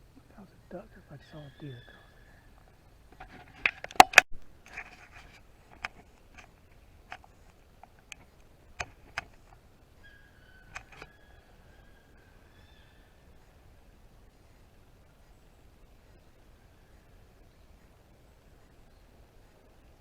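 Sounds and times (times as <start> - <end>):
sharp loud clicks: 3.6 - 4.3.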